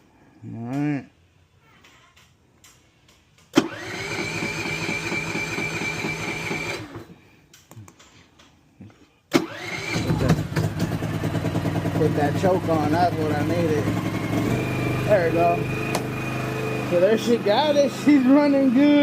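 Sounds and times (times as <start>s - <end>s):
generator starter cranking engine: 3.5s - 7.1s, 9.3s - 19.0s.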